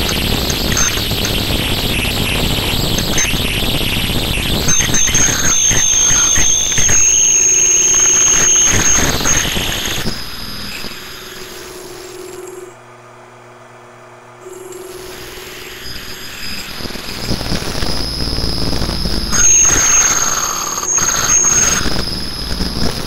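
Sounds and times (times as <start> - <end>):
lathe running with low hum: 14.4 - 23.0
lathe cutting with squeal: 15.1 - 18.2, 19.3 - 22.6.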